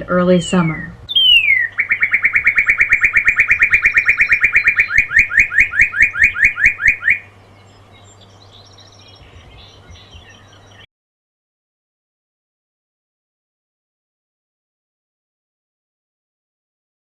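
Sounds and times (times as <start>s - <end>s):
bird singing whistles: 1.1s - 7.3s.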